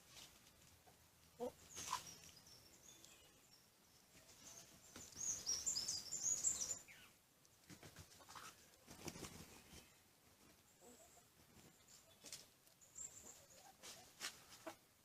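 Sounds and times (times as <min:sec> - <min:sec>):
faint high bird chirping: 0:01.4 - 0:07.2, 0:11.8 - 0:14.1.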